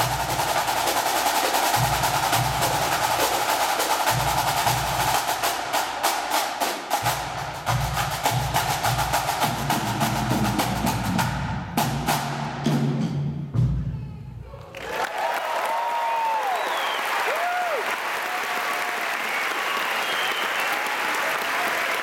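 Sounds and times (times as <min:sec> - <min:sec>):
bass and tenor drum beats: 0:00.0 - 0:05.8, 0:07.0 - 0:14.4
snare drum strokes and rolls: 0:00.0 - 0:13.6.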